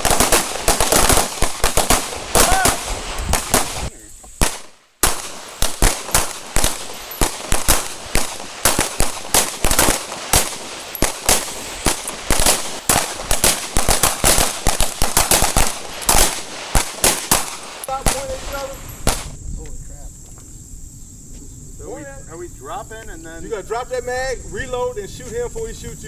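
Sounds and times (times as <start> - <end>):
handgun shots in volleys: 0.0 - 19.4.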